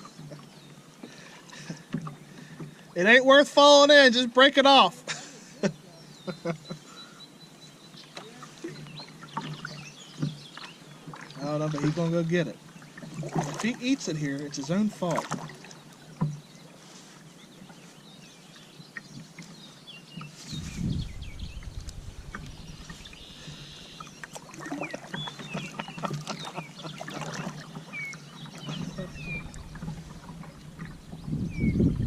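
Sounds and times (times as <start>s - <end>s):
knocks and clicks against boat: 0.0s - 2.8s, 8.0s - 12.0s, 12.8s - 16.6s, 21.9s - 32.0s
water sloshing: 0.0s - 3.2s, 5.4s - 32.0s
short chirping calls: 20.2s - 29.8s.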